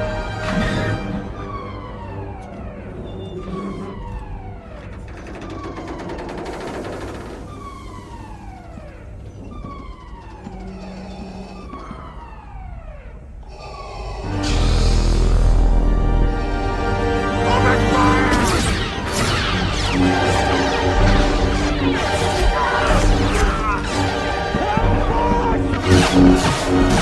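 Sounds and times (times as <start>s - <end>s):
low held synth notes: 6.7s - 27.0s.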